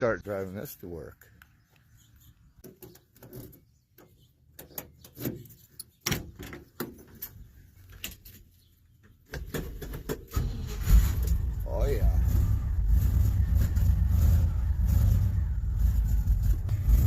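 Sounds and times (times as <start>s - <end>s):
truck engine starting: 10.3s - 17.0s.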